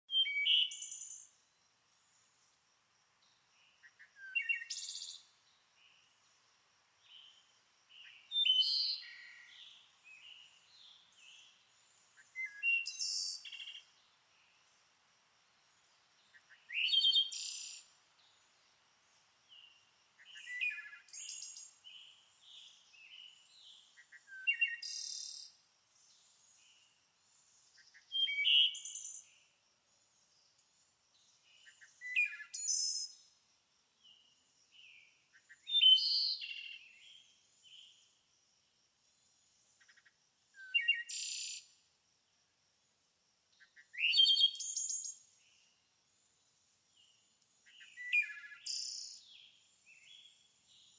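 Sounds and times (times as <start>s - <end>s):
songbird chirps and trills: 0.0s - 50.9s.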